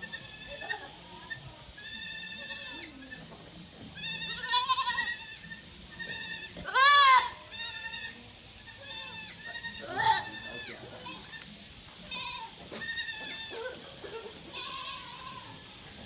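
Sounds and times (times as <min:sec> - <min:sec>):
goats bleating: 0:00.0 - 0:16.0.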